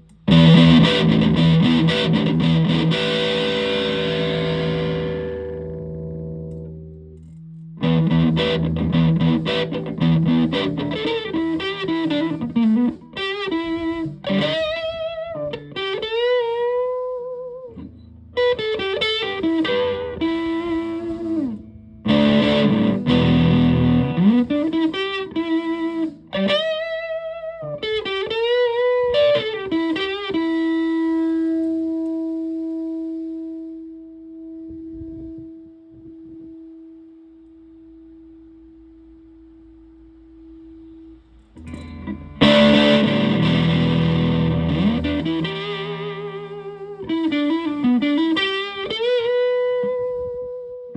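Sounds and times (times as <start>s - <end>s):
distorted electric guitar riff: 0.0s - 32.4s, 37.7s - 50.9s.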